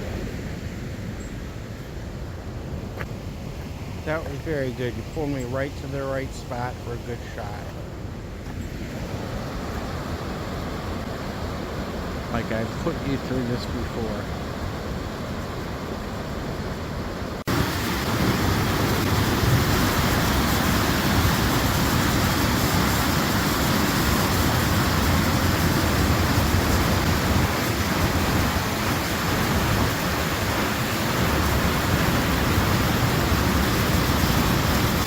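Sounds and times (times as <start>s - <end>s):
waterfall rushing: 8.9s - 35.0s.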